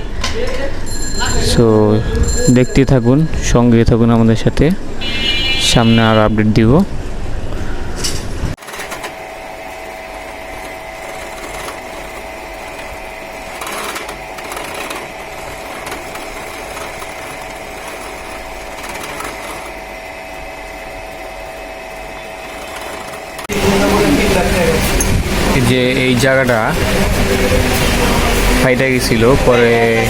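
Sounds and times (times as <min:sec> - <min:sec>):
electric machine motor whining: 0:08.6 - 0:30.0.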